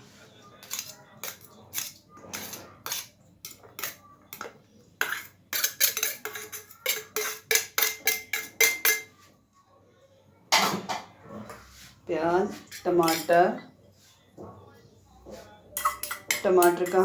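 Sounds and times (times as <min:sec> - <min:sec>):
metal utensil clinking on metal dish: 0:00.6 - 0:09.1, 0:12.7 - 0:13.4, 0:15.8 - 0:17.0.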